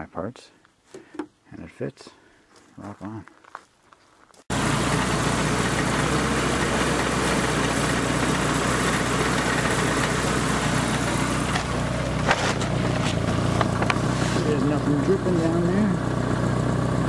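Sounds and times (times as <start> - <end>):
car engine idling: 4.5 - 17.0.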